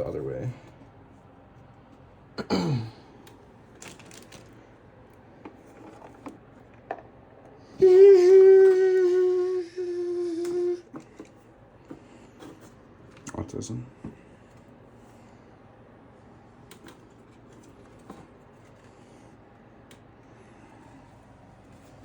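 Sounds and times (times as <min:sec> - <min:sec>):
man humming: 0:07.7 - 0:11.0
falling vocal sound: 0:07.8 - 0:10.9.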